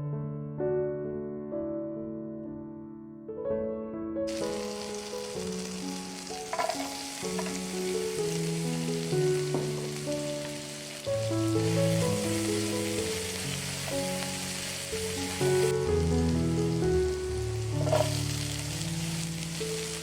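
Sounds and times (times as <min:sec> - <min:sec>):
soft piano music: 0:00.0 - 0:20.0
food sizzling in hot oil: 0:04.3 - 0:20.0
stirring knocks: 0:06.4 - 0:08.1, 0:09.4 - 0:10.6, 0:17.8 - 0:18.3.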